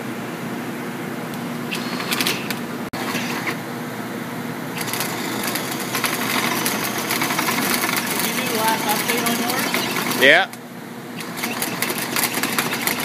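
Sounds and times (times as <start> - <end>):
cordless drill drilling metal: 1.7 - 3.6, 4.8 - 10.3, 11.2 - 13.0.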